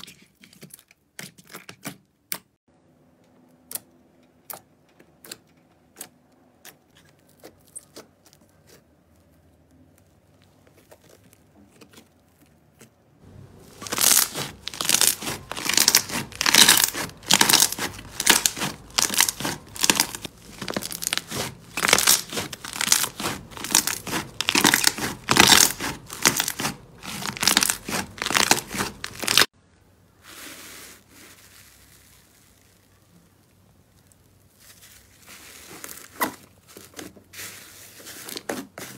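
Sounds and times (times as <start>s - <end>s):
slime crackling and popping: 13.7s - 29.5s
soft rustling: 30.2s - 33.1s, 33.9s - 38.9s.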